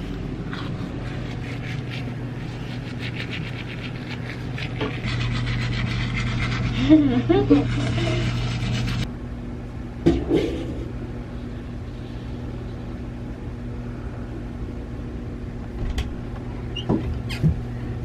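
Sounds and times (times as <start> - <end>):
low machine hum: 0.0 - 18.0.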